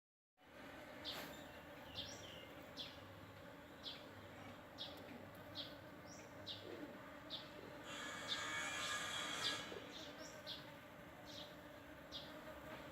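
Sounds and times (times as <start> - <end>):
bees buzzing: 0.4 - 12.9
bird chirping: 1.0 - 3.1, 3.8 - 7.6, 11.3 - 12.4.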